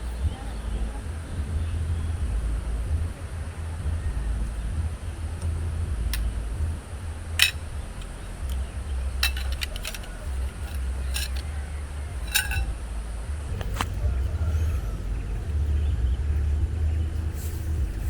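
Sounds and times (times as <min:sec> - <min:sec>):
light ringing clinks: 0:07.4 - 0:12.9.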